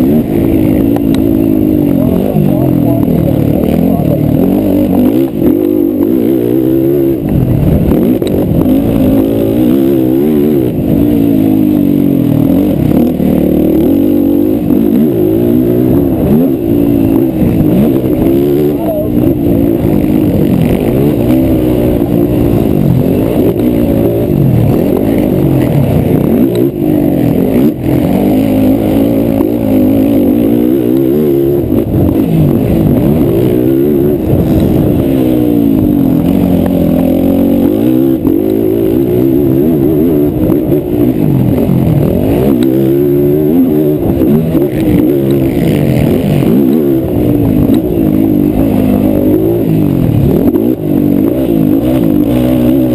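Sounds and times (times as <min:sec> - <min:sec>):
quad engine revving: 0:00.0 - 0:52.9.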